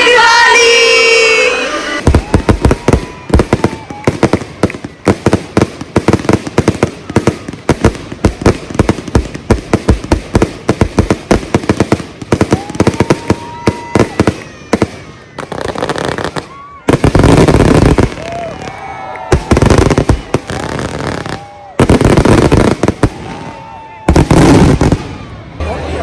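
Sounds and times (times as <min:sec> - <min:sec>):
fireworks banging: 0:00.0 - 0:25.8.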